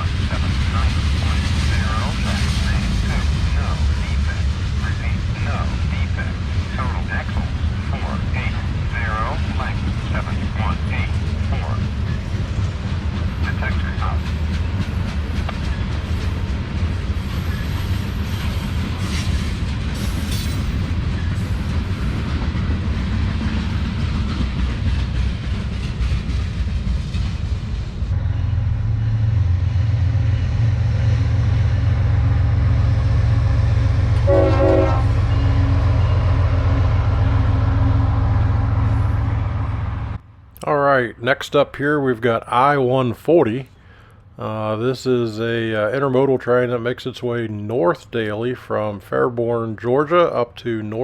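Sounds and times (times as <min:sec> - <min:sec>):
rail cars clattering over track: 0:00.0 - 0:40.2
diesel locomotives running: 0:00.0 - 0:51.0
train horn: 0:34.2 - 0:39.9.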